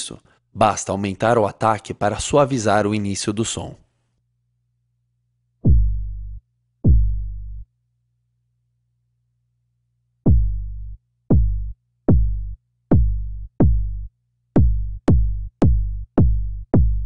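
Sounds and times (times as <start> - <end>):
synthesized kick drum hits: 5.6 - 7.6, 10.3 - 17.0.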